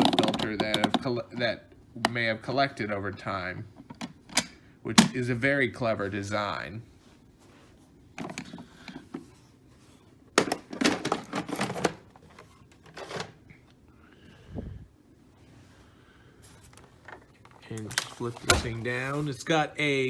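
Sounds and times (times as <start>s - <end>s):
plastic clicking and rattling: 0.0s - 1.2s, 10.4s - 13.4s, 16.6s - 18.8s.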